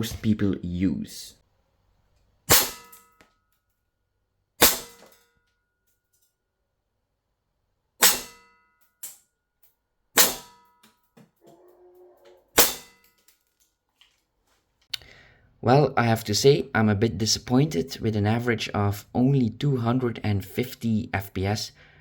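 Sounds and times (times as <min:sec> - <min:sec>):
airsoft pistol shots: 0:02.5 - 0:03.1, 0:04.6 - 0:05.2, 0:08.0 - 0:08.5, 0:10.2 - 0:10.6, 0:12.6 - 0:13.0.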